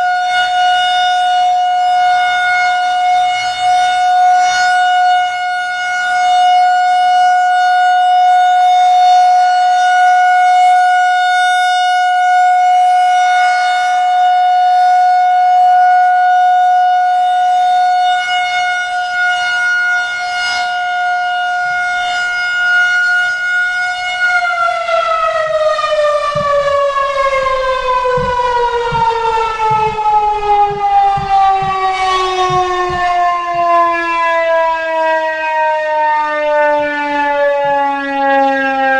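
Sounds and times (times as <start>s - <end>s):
rotating siren wailing: 0.0s - 38.9s
siren winding down: 21.5s - 38.9s.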